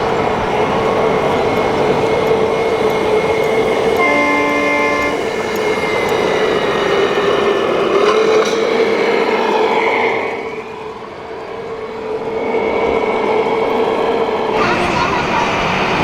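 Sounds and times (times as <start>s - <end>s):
model vehicle humming: 0.0s - 9.6s, 14.6s - 16.0s.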